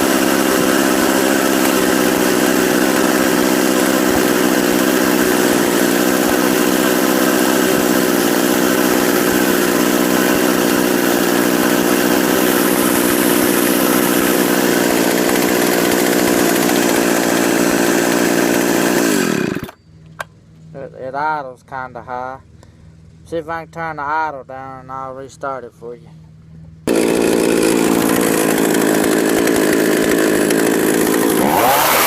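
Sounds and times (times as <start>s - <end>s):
chainsaw idling and stopping: 0.0s - 20.2s, 26.8s - 32.0s.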